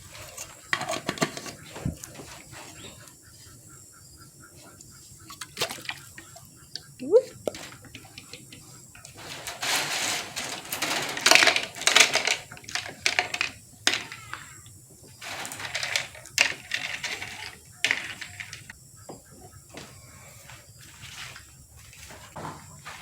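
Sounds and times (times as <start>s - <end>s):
small rocks clattering into plastic: 0.0s - 2.9s, 7.4s - 18.8s.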